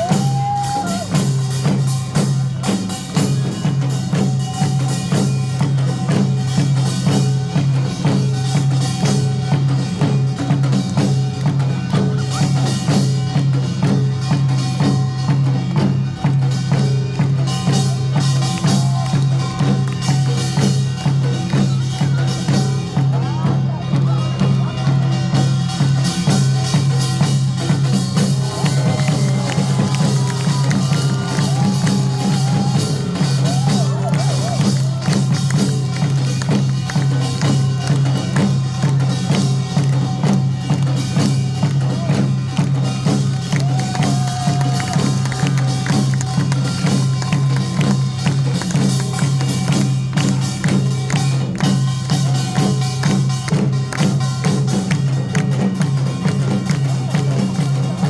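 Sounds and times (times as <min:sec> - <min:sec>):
loud amplified music with bass: 0:11.8 - 0:58.0.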